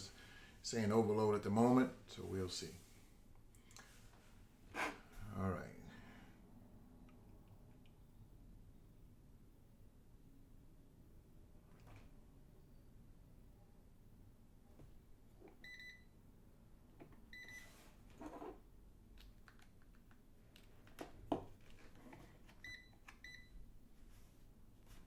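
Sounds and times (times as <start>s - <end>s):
multimeter beeps: 15.6s - 16.1s, 17.3s - 17.7s, 22.6s - 23.6s.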